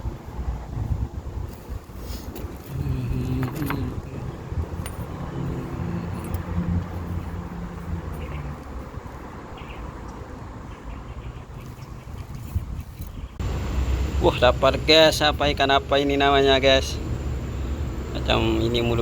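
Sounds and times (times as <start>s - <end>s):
vehicle engine passing by: 2.7s - 9.5s, 13.4s - 19.0s
faint traffic hiss: 13.4s - 19.0s.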